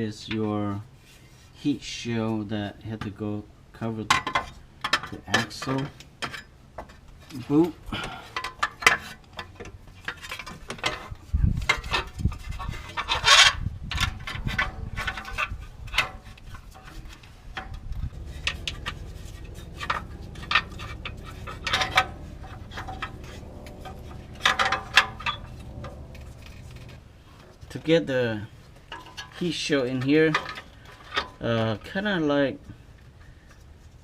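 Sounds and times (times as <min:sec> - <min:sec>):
metal clicks and clanks: 0:04.1 - 0:27.8, 0:28.7 - 0:31.4
sheet metal scraping and rubbing: 0:08.4 - 0:27.7.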